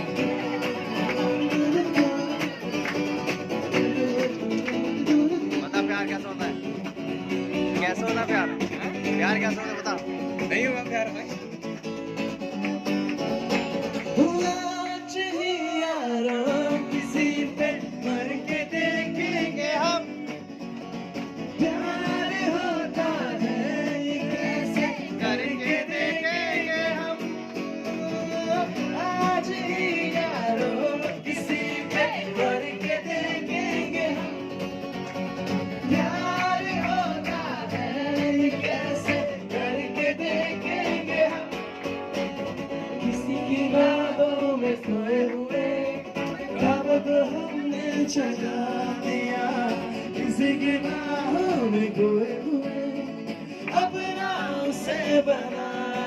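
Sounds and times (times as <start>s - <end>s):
person singing: 0.0s - 6.0s
guitar accompaniment: 0.0s - 56.0s.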